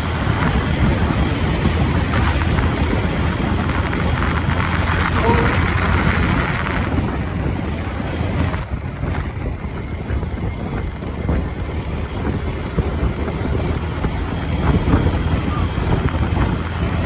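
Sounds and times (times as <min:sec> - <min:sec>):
motorbike riding noise: 0:00.0 - 0:17.0
wind buffeting microphone: 0:00.0 - 0:17.0.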